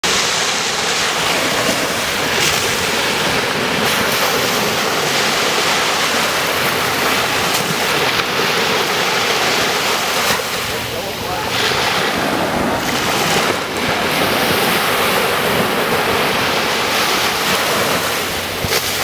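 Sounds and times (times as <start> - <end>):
ocean surf washing onto beach: 0.0 - 19.0
wind buffeting microphone: 0.1 - 19.0.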